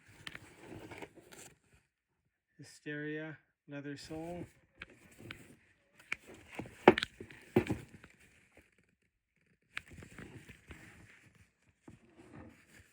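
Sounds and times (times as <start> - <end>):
boots knocking and clicking: 6.6 - 7.9.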